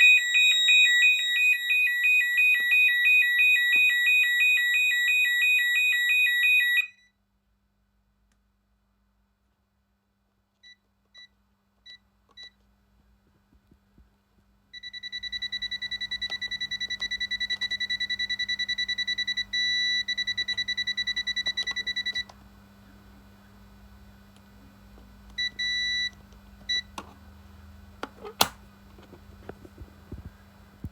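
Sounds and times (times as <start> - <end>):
alarm keypad beeping: 0.0 - 7.0, 14.8 - 22.3.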